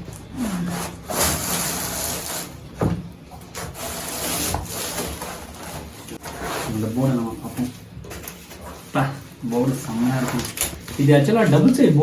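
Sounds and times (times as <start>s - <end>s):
packaging rustling and scraping: 3.4s - 11.8s.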